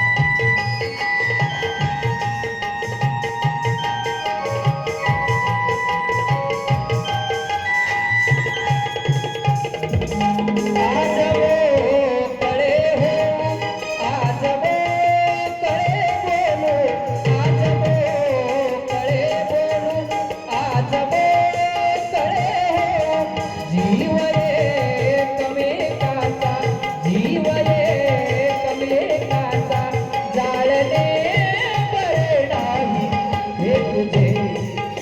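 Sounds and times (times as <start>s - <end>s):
wavering melodic line: 0.0s - 14.3s.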